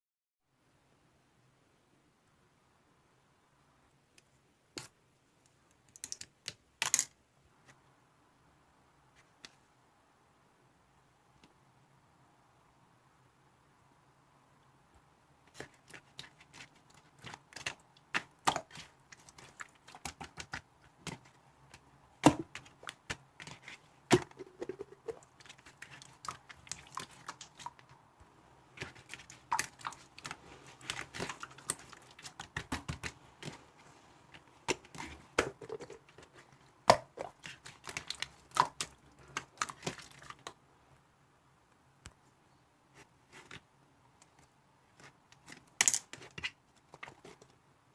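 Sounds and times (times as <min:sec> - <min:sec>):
clicks and taps of small objects: 0:04.2 - 0:07.2, 0:28.8 - 0:33.6, 0:44.2 - 0:47.5.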